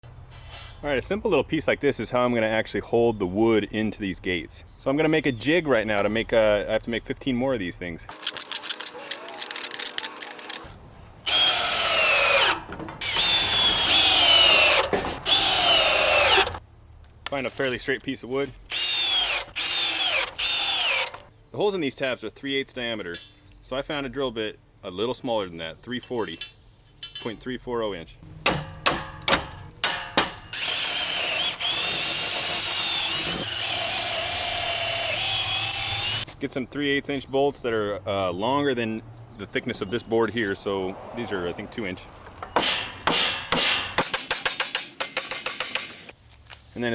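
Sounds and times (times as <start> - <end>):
electric power drill whining: 11.3 - 16.6, 18.7 - 21.3, 30.5 - 36.3.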